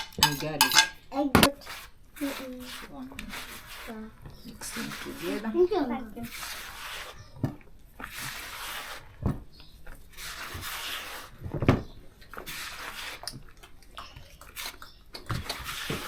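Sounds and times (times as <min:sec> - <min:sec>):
sharp knocks on bowl: 0:00.0 - 0:01.5
batter swishing in a bowl: 0:01.5 - 0:16.0.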